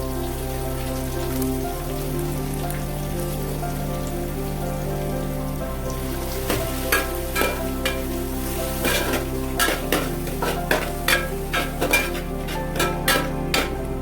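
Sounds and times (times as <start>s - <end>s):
onions sizzling in hot oil: 0.0s - 14.0s
spoon stirring and clinking on pot: 6.5s - 8.1s, 8.8s - 13.9s.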